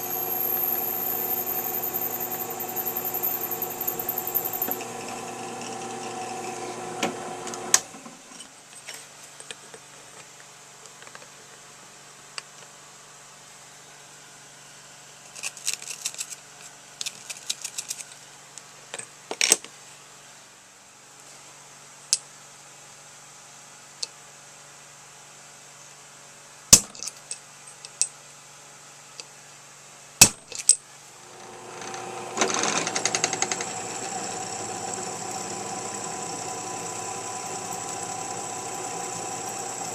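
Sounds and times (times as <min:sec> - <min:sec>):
machine tool motor running: 0:00.0 - 0:07.9, 0:31.2 - 0:39.9.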